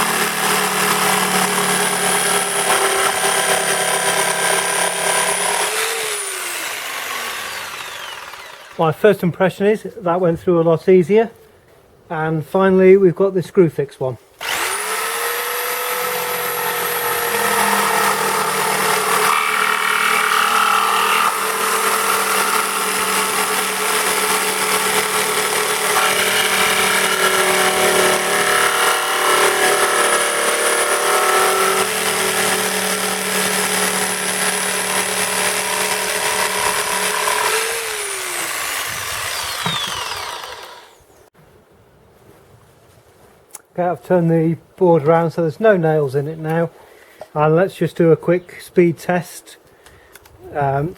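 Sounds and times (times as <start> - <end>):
jigsaw cutting wood: 0.0 - 8.8, 14.4 - 41.0
jigsaw motor winding down: 0.0 - 8.8, 14.4 - 41.0.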